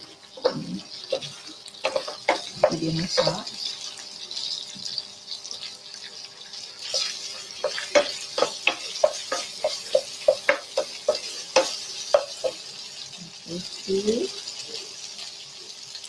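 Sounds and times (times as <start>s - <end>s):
eggs sizzling in frying pan: 0.0s - 16.0s
spatula scraping pan: 0.4s - 5.0s, 6.5s - 12.8s.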